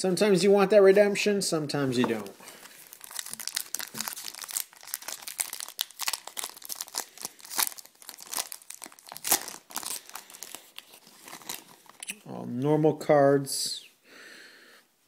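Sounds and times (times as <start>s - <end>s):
wrapper crinkling: 2.2s - 12.1s.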